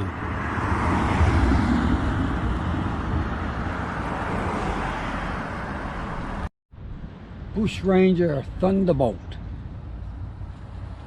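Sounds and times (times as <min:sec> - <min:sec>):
car passing: 0:00.0 - 0:07.7
engine and tyre rumble: 0:00.0 - 0:11.0
street noise: 0:00.0 - 0:11.0.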